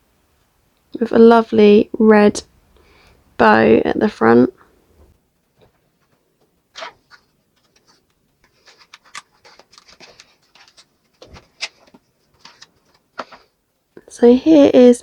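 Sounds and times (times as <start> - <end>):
toy and fabric clicks and rustles: 6.8 - 13.5.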